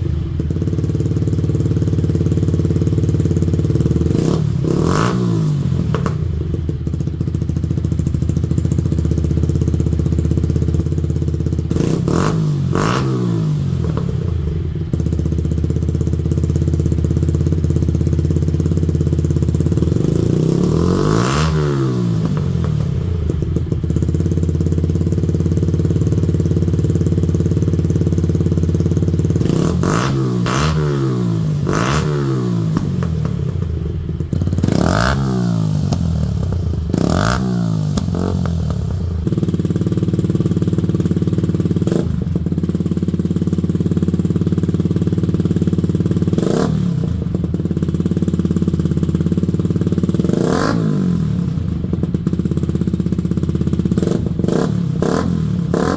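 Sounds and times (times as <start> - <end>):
motorcycle engine revving: 0.0 - 55.9.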